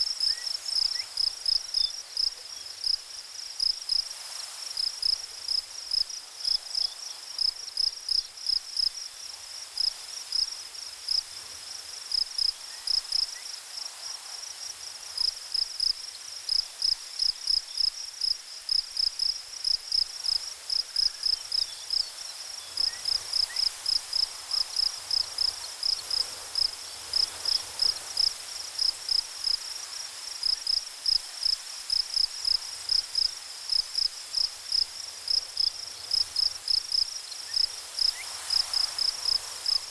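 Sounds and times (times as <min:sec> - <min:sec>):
faint steady hiss: 0:00.0 - 0:39.9
insects chirping: 0:00.0 - 0:39.9.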